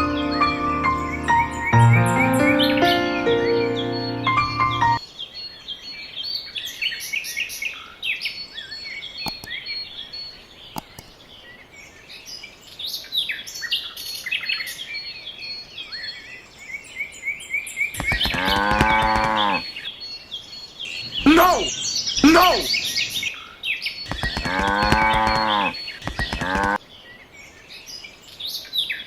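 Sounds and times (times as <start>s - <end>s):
small birds chirping: 0.0s - 29.0s
cow mooing: 18.2s - 19.7s, 24.3s - 26.8s.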